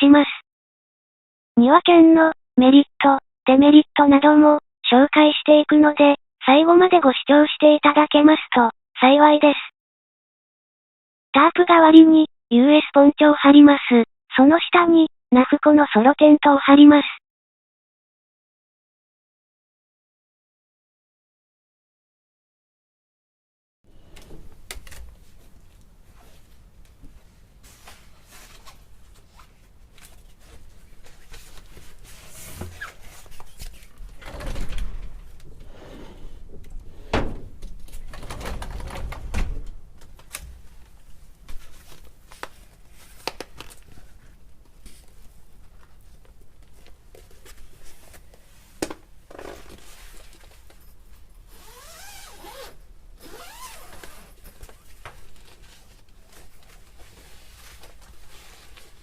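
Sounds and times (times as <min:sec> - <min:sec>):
zip-like rasping: 0:51.5 - 0:54.4.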